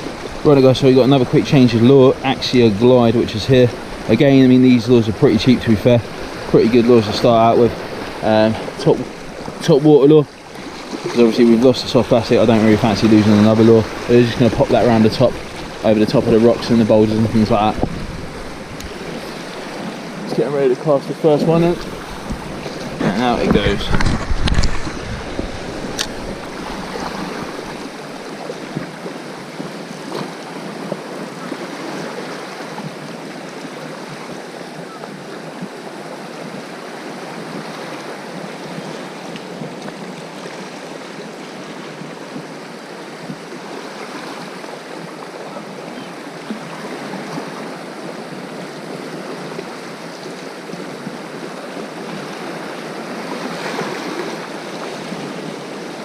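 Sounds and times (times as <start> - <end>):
surf washing on rocky shore: 0.0 - 56.0
sharp click: 26.0 - 26.2.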